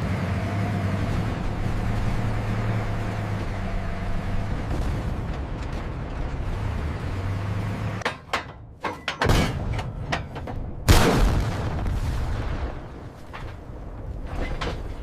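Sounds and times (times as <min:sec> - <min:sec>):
tank engine rumbling: 0:00.0 - 0:15.0
sharp cracks and bangs: 0:09.1 - 0:15.0.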